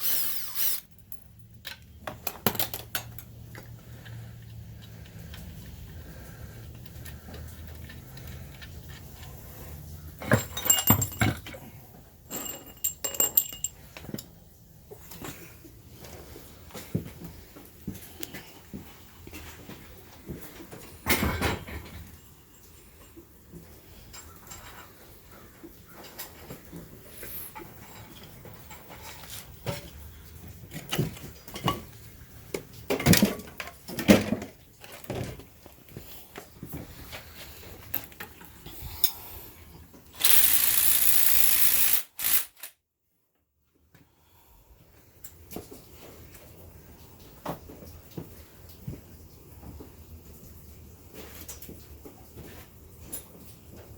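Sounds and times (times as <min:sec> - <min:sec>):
metal tools clinking: 0:00.0 - 0:03.7, 0:10.1 - 0:14.3, 0:40.2 - 0:42.7
metal tools clanking: 0:10.0 - 0:14.3.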